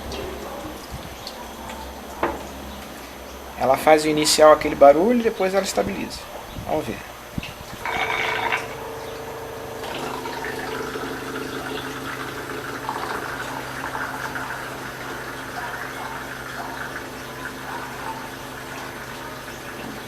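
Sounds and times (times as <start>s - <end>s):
valve humming: 0.0s - 20.0s
water rushing through valve: 7.4s - 20.0s.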